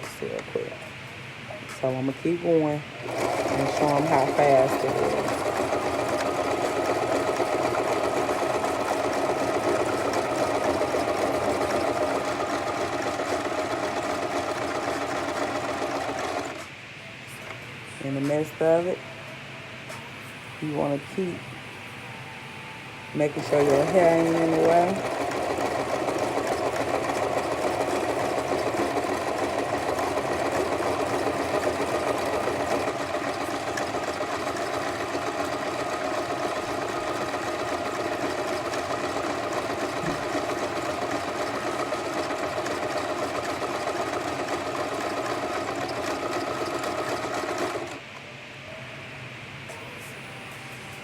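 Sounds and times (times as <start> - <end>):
sewing machine running: 2.4 - 16.7, 23.2 - 48.2.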